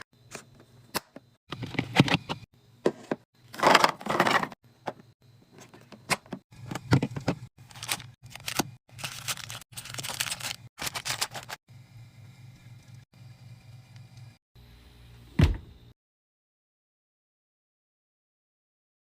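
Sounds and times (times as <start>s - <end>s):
containers clattering: 1.6s - 4.6s
packaging rustling: 7.6s - 11.6s.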